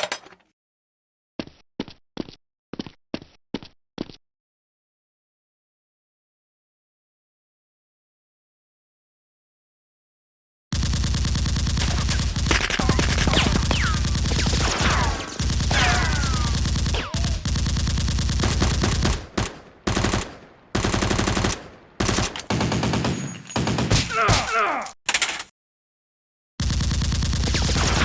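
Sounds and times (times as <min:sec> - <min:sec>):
automatic gunfire: 0:10.7 - 0:23.9.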